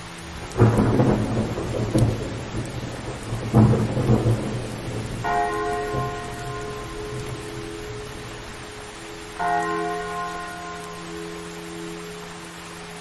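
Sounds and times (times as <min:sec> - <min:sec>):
large church bell ringing: 0:05.2 - 0:13.0.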